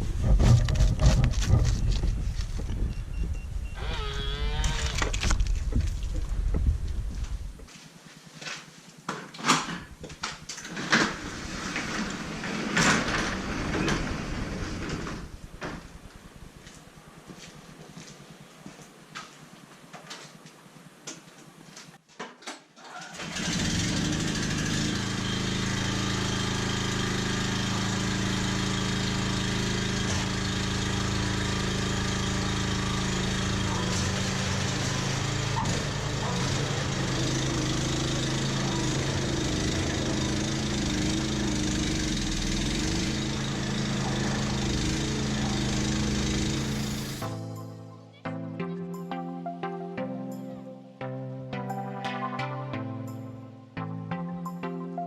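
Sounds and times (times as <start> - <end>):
snowblower engine running: 23.2 - 47.4.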